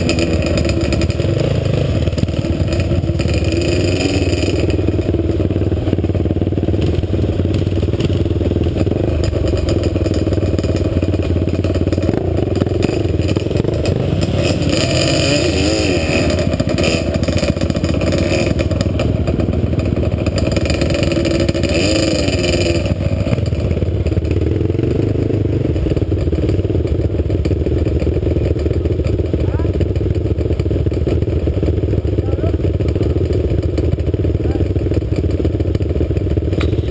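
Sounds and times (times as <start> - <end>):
quad bike engine running: 0.0 - 36.9.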